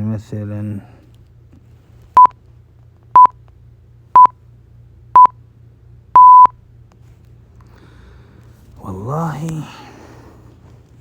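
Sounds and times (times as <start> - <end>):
long electronic beep: 6.2 - 6.5
short electronic beeps: 6.2 - 6.5.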